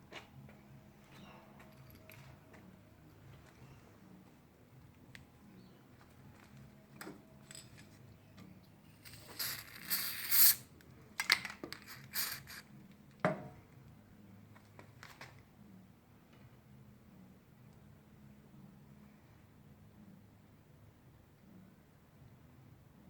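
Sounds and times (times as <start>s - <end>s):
light metal clicks and clinks: 1.1s - 2.4s, 6.4s - 9.9s.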